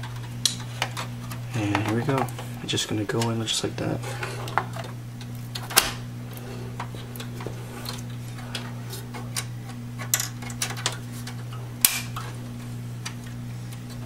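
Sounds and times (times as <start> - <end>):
steady low hum: 0.0 - 14.0.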